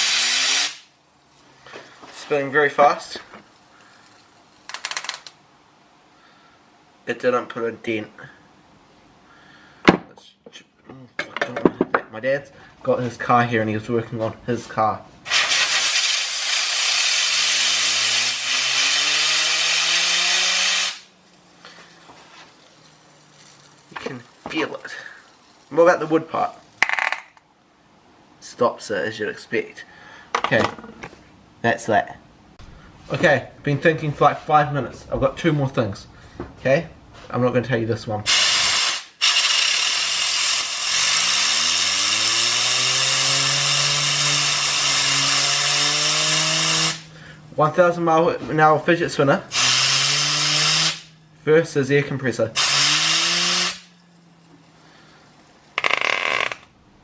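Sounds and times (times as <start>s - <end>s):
compressed air hissing: 0.0s - 0.9s, 15.2s - 25.6s, 38.3s - 47.4s, 49.5s - 51.1s, 52.6s - 54.0s
fidget spinner whirring: 3.4s - 5.4s, 15.2s - 27.4s, 38.3s - 47.2s
fidget spinner humming: 16.8s - 26.8s.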